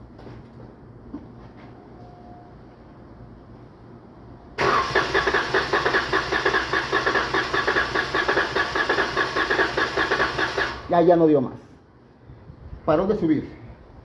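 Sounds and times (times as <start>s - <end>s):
starter cranking engine: 4.6s - 10.9s.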